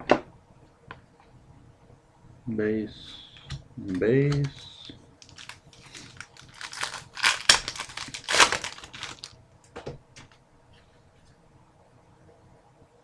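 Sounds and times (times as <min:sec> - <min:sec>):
card packaging rustling and crinkling: 0:04.3 - 0:09.4.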